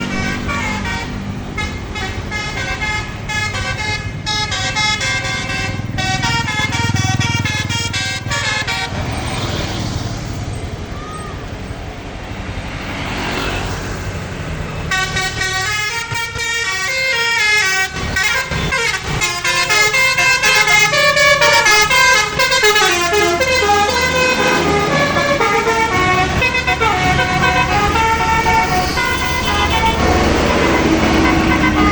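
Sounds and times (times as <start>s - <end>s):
multi-tone bus horn melody: 0.0s - 9.4s, 14.8s - 31.9s
bus engine running: 0.0s - 31.9s.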